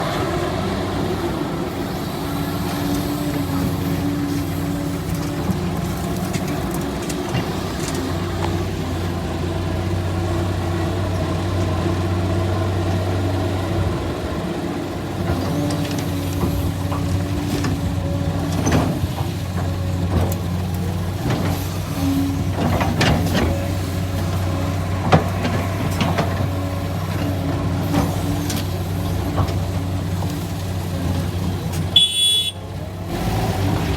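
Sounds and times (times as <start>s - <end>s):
heavy machine engine running: 0.0s - 33.9s.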